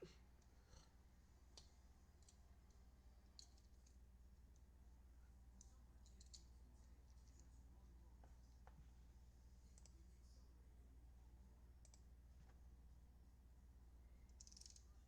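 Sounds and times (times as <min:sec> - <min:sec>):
faint clicks: 0:05.6 - 0:06.5, 0:09.7 - 0:10.0, 0:11.8 - 0:12.1.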